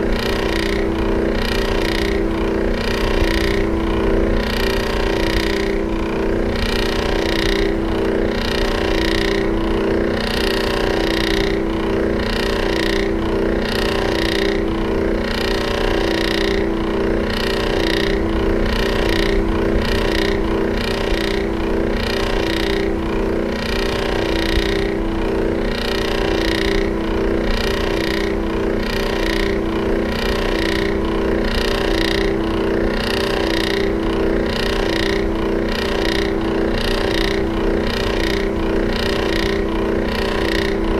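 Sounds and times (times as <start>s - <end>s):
electric fan running: 0.0s - 40.9s.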